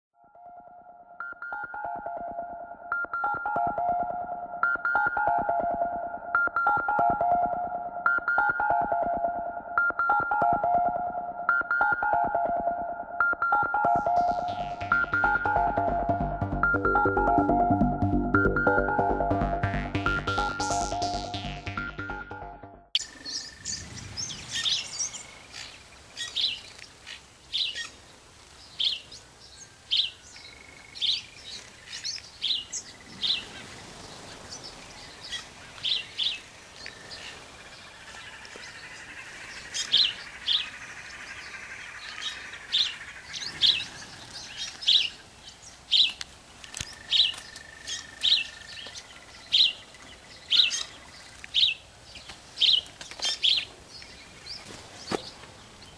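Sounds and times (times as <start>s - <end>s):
small birds chirping: 23.0s - 55.9s.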